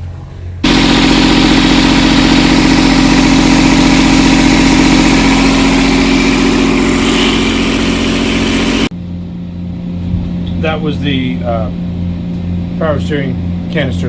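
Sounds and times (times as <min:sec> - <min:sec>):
machinery hum: 0:00.0 - 0:14.0
air hissing from reservoir: 0:00.6 - 0:08.9.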